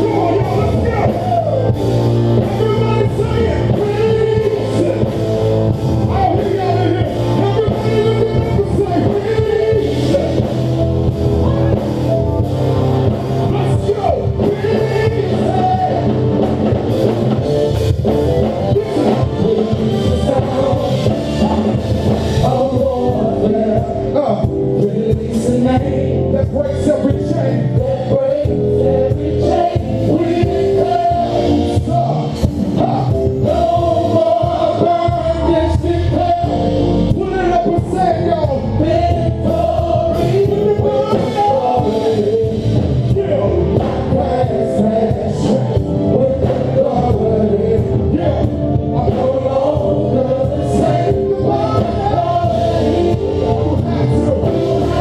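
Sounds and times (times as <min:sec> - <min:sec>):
band with drums: 0:00.0 - 0:55.0
choir singing: 0:06.1 - 0:16.3, 0:27.4 - 0:32.3, 0:33.0 - 0:36.8, 0:38.6 - 0:55.0.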